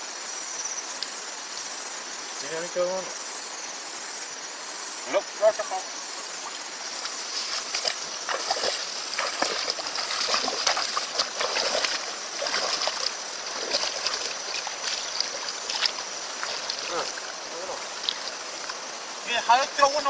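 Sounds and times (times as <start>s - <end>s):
faint high hiss: 0.0s - 20.0s
water splashing and sloshing: 6.4s - 19.1s.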